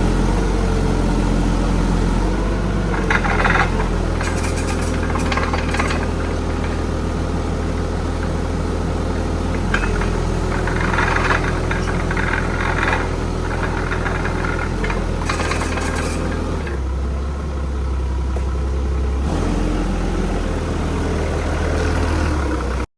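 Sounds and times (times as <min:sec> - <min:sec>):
heavy equipment engine idling: 0:00.0 - 0:22.9
rattly noise: 0:02.2 - 0:08.6, 0:09.4 - 0:16.9.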